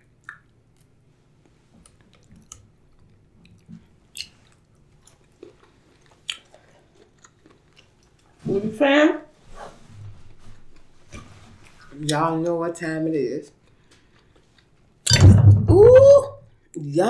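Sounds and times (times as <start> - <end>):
wet mouth clicks and smacks: 0.0 - 0.9, 1.8 - 5.2, 6.2 - 8.2
person chewing quietly: 0.0 - 8.4, 10.7 - 12.2, 13.6 - 15.0.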